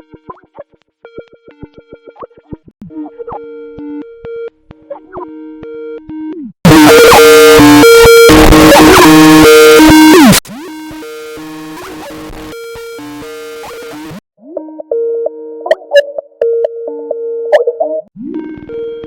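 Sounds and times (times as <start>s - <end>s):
distorted ringtone: 6.7s - 19.0s.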